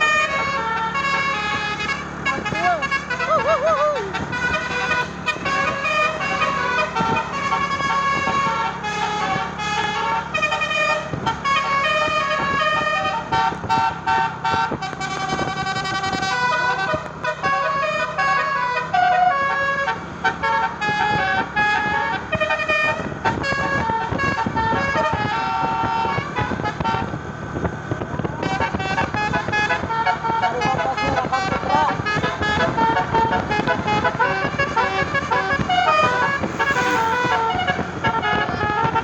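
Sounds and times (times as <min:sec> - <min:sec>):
musical air horn melody: 0:00.0 - 0:27.2, 0:28.4 - 0:39.0.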